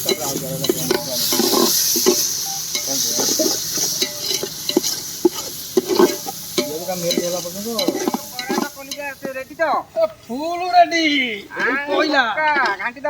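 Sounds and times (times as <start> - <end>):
spatula scraping a pan: 0.0 - 9.5, 11.4 - 12.9
spices sizzling in hot oil: 0.0 - 13.0.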